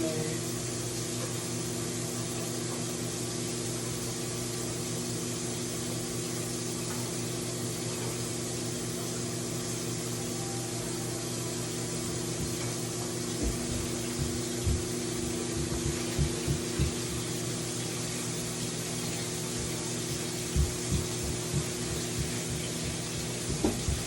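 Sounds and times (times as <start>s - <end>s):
steady low hum: 0.0s - 24.0s
chicken frying in oil: 11.3s - 24.0s.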